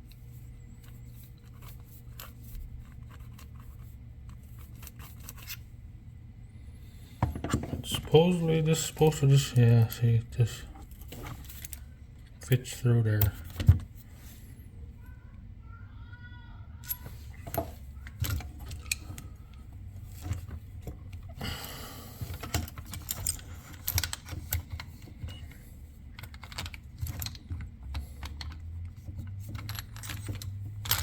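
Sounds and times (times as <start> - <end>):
small hard parts clicking: 16.8 - 31.0.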